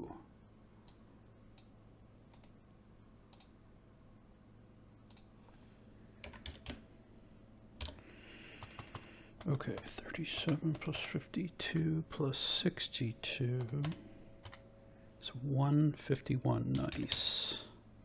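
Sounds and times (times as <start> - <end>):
low steady hum: 0.0 - 18.0
faint computer clicks: 0.8 - 2.6, 3.3 - 3.6, 5.1 - 5.3.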